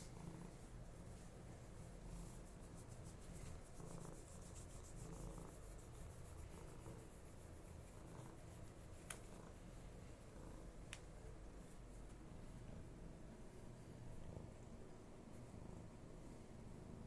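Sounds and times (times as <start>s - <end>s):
faint rubbing and rustling: 0.0s - 12.9s.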